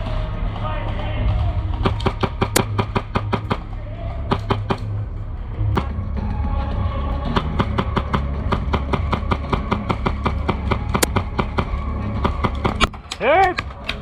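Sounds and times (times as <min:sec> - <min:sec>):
steady low drone: 0:00.0 - 0:14.0
airsoft guns firing: 0:01.4 - 0:05.0, 0:07.3 - 0:14.0.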